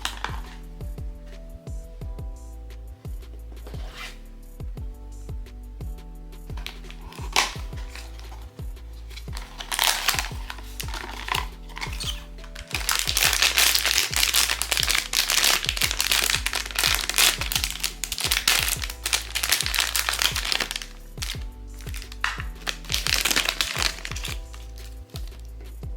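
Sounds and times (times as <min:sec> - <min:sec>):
plastic packaging crinkling: 0:00.0 - 0:00.6, 0:06.6 - 0:25.5
background music with steady beat: 0:00.0 - 0:25.9.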